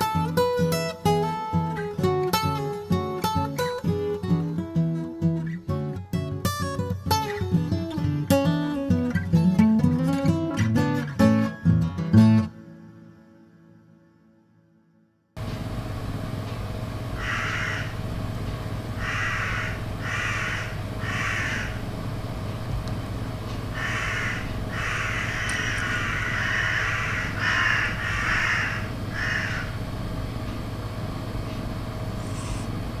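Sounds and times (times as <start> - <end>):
steady low hum: 15.4 - 33.0
crow cawing: 17.2 - 18.0, 19.0 - 21.8, 23.7 - 29.8.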